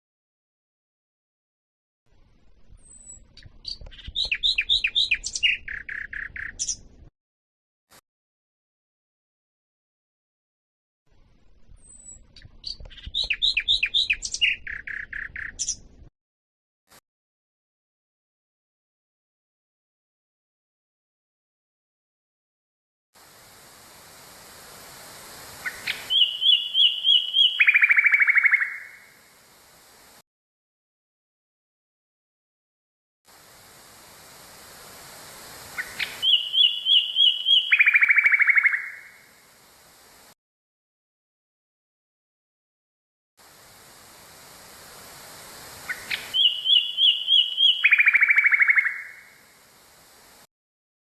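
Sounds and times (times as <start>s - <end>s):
nightingale singing: 2.8s - 6.9s, 11.8s - 15.9s, 24.9s - 29.2s, 34.3s - 39.3s, 43.8s - 49.5s
background hiss: 3.9s - 7.0s, 23.2s - 30.2s, 33.3s - 40.4s, 43.4s - 50.5s.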